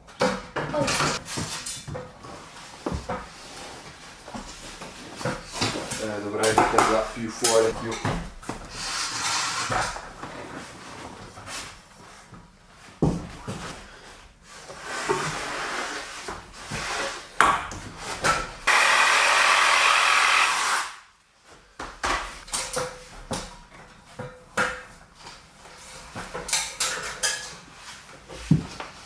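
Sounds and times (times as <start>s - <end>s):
wooden knocks and scraping: 0.1s - 11.6s
power tool motor running: 18.7s - 21.0s.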